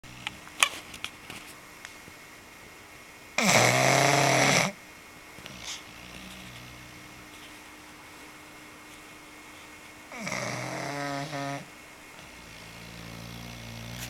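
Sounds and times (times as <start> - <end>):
dog snoring: 0.0 - 0.5, 3.4 - 4.8, 5.4 - 7.6, 10.1 - 14.0
faint snuffles: 5.4 - 7.5, 9.5 - 14.0.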